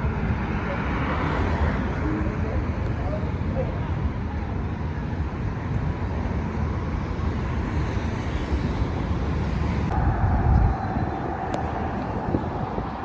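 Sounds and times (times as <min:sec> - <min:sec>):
passing traffic rumble: 0:00.0 - 0:13.0.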